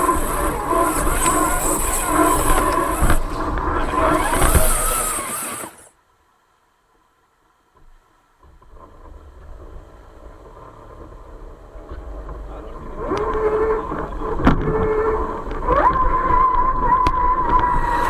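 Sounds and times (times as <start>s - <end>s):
electric motor and gearbox whining: 0.0s - 5.9s, 17.5s - 18.0s.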